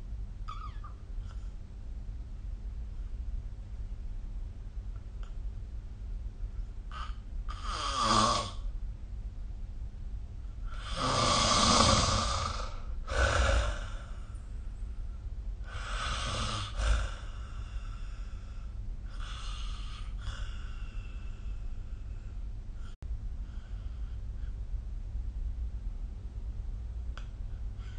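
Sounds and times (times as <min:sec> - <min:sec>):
person snoring: 0:06.9 - 0:08.6, 0:10.7 - 0:14.3, 0:15.7 - 0:18.0.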